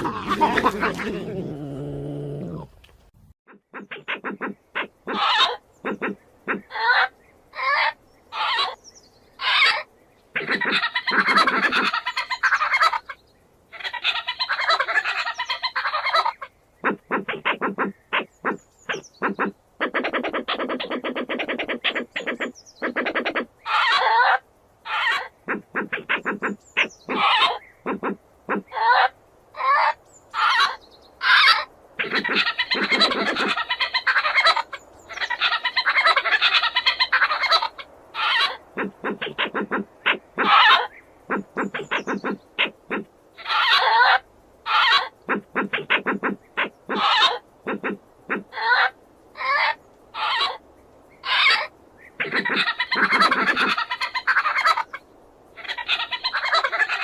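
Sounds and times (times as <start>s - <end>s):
badger calls: 0.0s - 8.8s, 16.8s - 24.2s, 24.9s - 34.6s, 35.2s - 50.6s, 52.2s - 54.9s.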